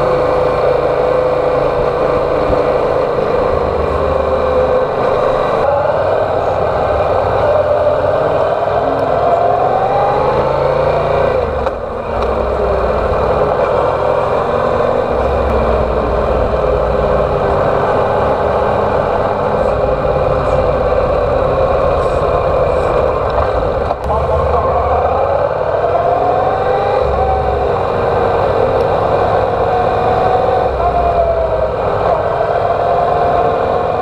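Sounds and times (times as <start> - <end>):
motorcycle engine running: 0.0 - 34.0.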